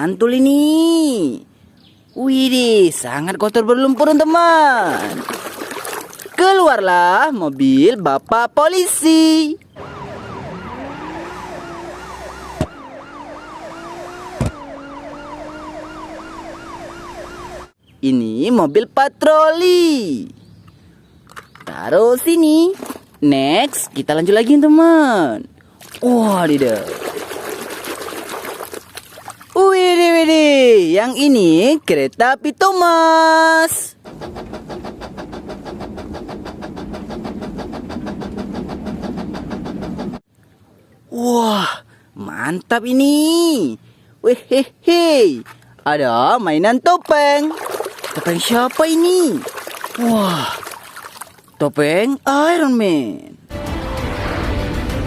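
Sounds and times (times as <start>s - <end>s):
police siren yelping: 9.8s - 17.8s.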